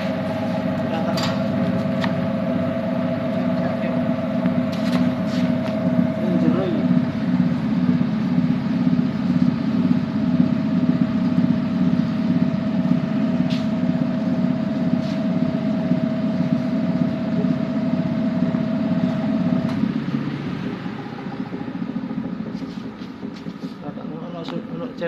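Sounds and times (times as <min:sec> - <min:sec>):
oil spinner motor running: 0:00.0 - 0:25.0.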